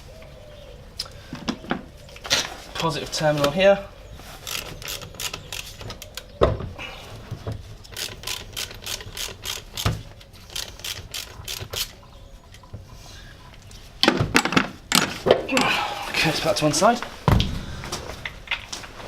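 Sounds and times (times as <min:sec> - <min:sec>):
ratchet clicking: 0:07.9 - 0:09.9, 0:10.5 - 0:11.9.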